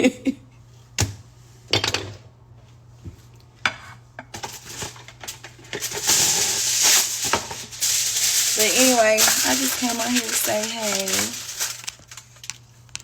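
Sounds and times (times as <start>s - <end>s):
utensils and dishes clinking: 4.4s - 11.9s.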